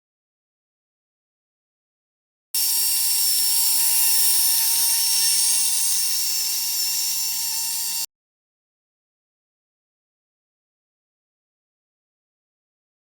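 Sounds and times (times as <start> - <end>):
hiss: 2.6 - 8.1
model locomotive motor whine: 2.6 - 8.1.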